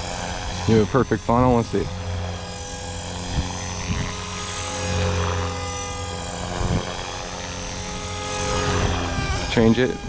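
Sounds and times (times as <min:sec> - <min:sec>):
rc helicopter motor whine: 0:00.0 - 0:10.0.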